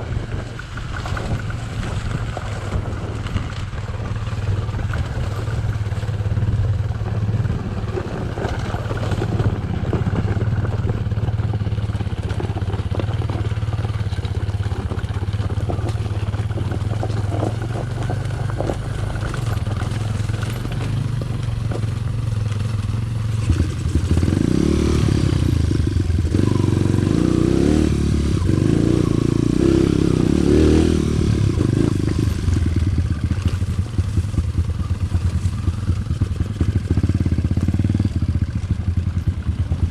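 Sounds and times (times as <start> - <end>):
bike rattling over rough ground: 0.0 - 39.9
dirt bike engine revving: 18.5 - 34.8.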